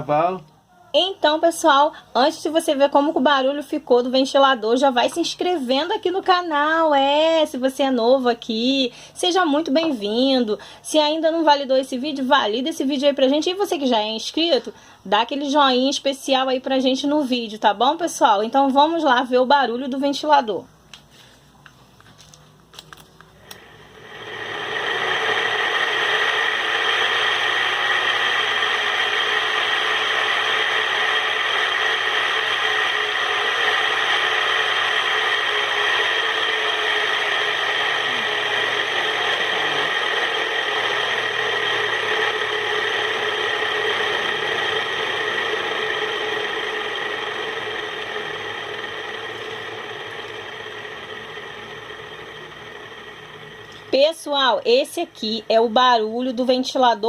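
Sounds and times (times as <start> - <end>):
ceiling fan bearings grinding: 23.4 - 57.0.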